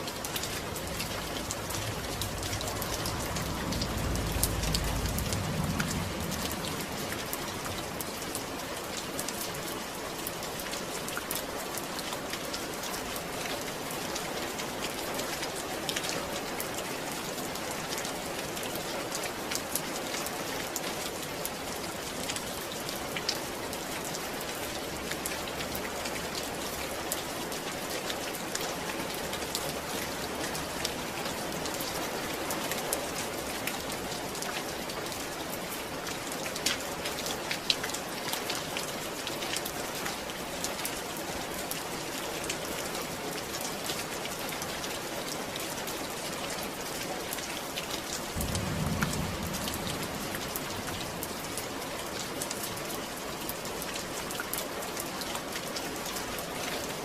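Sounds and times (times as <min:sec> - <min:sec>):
raindrops ticking: 0:00.0 - 0:16.7
steady rain falling: 0:00.0 - 0:57.0
low rumble: 0:00.6 - 0:08.0, 0:48.4 - 0:51.6.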